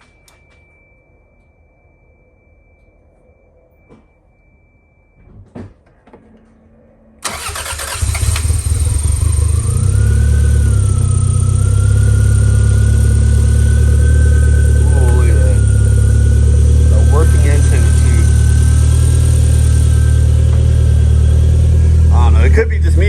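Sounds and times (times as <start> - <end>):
car engine starting and idling: 7.2 - 23.0.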